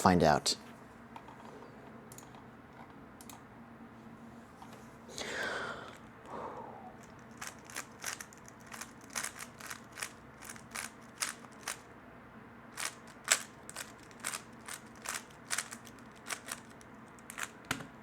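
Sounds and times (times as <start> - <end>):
puzzle cube clicking as turned: 7.0 - 11.8, 12.8 - 17.6.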